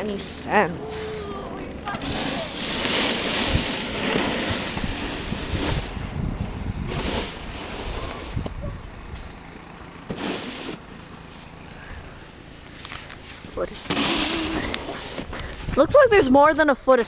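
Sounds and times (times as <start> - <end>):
wind buffeting microphone: 1.4 - 9.5, 14.4 - 16.9.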